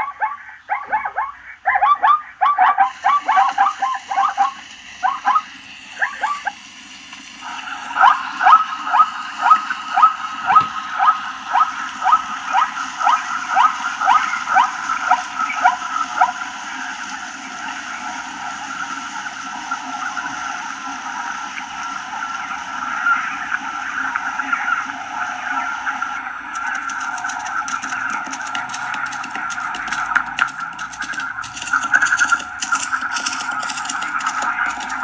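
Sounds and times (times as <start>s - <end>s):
zebra barking yelps: 0.0s - 6.6s.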